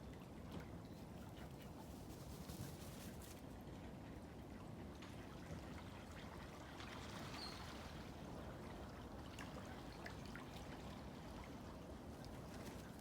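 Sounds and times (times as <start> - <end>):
faint river water flowing: 4.3 - 13.0
small water ticks: 12.1 - 13.0.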